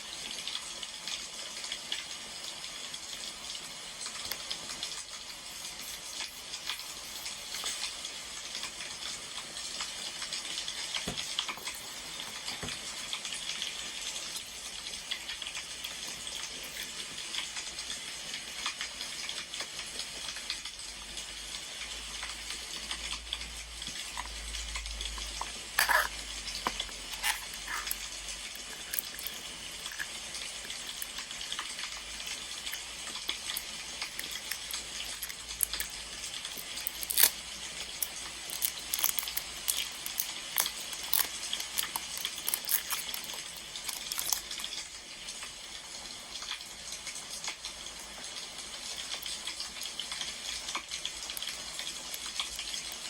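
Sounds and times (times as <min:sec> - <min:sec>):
wood fire crackling and popping: 0:26.4 - 0:45.5.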